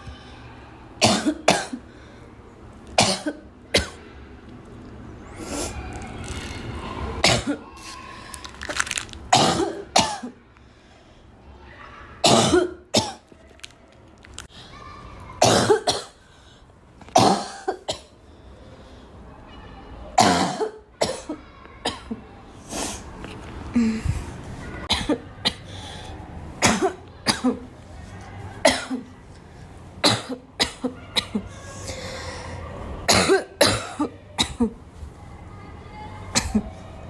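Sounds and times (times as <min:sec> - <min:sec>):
girl coughing: 0:01.0 - 0:01.8, 0:03.0 - 0:04.0, 0:07.2 - 0:07.6, 0:09.3 - 0:10.4, 0:12.2 - 0:13.2, 0:15.4 - 0:16.2, 0:17.2 - 0:18.1, 0:20.2 - 0:22.2, 0:24.9 - 0:25.7, 0:26.6 - 0:27.6, 0:28.6 - 0:29.1, 0:30.0 - 0:32.0, 0:33.1 - 0:34.8, 0:36.3 - 0:36.7.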